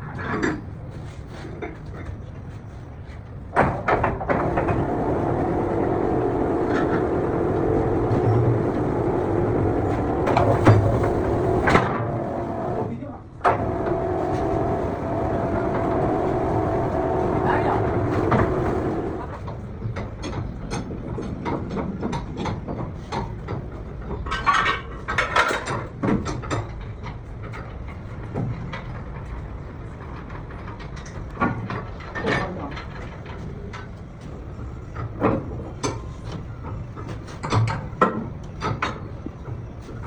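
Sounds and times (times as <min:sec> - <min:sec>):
low steady hum: 0:04.2 - 0:21.4.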